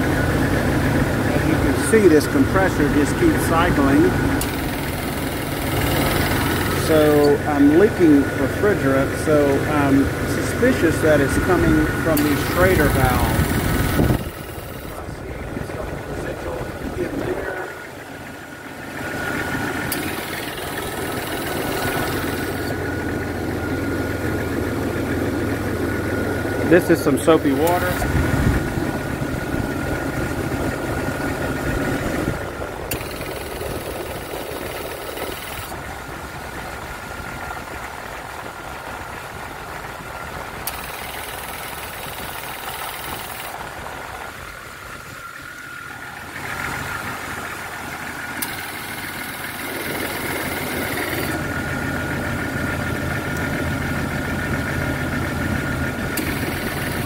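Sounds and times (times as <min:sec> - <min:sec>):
car engine idling: 0:00.0 - 0:57.0
steady thin whine: 0:00.1 - 0:18.6, 0:48.4 - 0:52.5
man talking: 0:01.3 - 0:04.2, 0:06.8 - 0:13.6, 0:14.9 - 0:17.8, 0:26.6 - 0:28.1.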